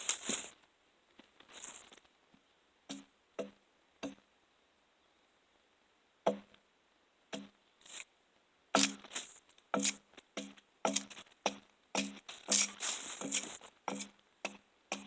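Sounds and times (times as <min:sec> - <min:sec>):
axe chopping wood: 0:02.9 - 0:04.2, 0:06.3 - 0:06.5, 0:07.3 - 0:07.5, 0:08.8 - 0:09.1, 0:09.7 - 0:15.0
bark scraping: 0:12.2 - 0:14.1.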